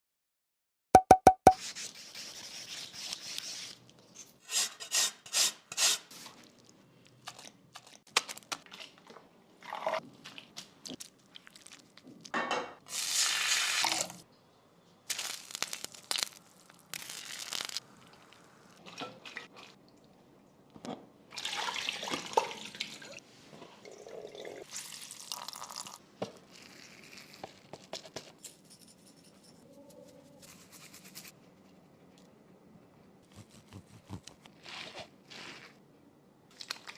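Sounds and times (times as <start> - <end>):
kitchen knocks and clatter: 12.4 - 12.8
running or splashing water: 21.3 - 23.2.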